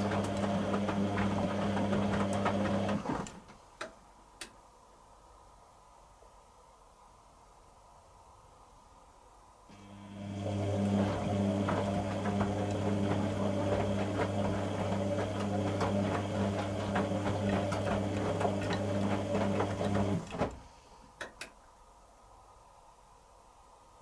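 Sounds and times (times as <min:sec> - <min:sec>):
washing machine humming and rattling: 0:00.0 - 0:03.6, 0:09.7 - 0:20.8.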